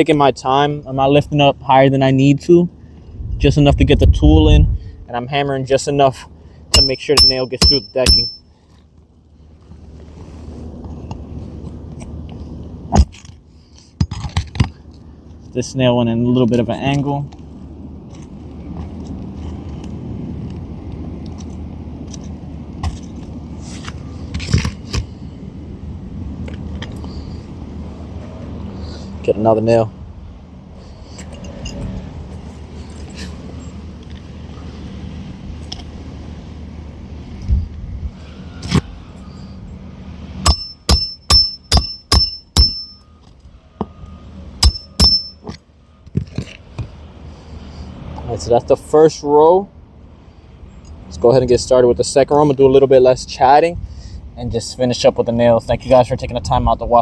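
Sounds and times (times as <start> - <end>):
steady low rumble: 0.0 - 14.0, 14.6 - 45.4
hammer striking nail: 6.8 - 8.4, 40.4 - 42.9, 44.6 - 45.4.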